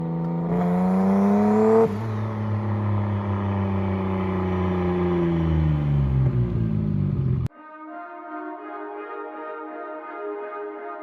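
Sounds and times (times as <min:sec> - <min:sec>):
turbocharged car engine accelerating: 0:00.0 - 0:07.5.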